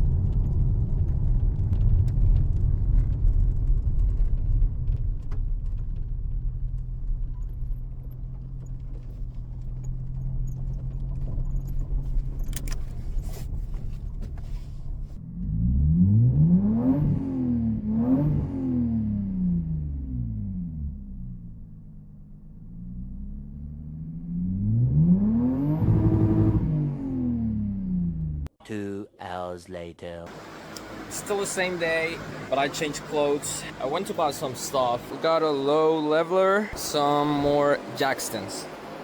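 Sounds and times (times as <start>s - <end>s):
car engine droning and revving: 0.0s - 28.5s, 30.3s - 39.0s.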